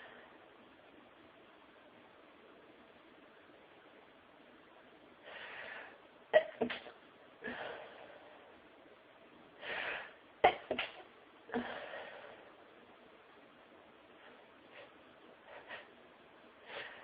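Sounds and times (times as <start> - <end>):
woman breathing in and out: 5.2 - 6.1, 7.4 - 8.7, 9.5 - 10.3, 11.5 - 12.6, 14.1 - 17.0.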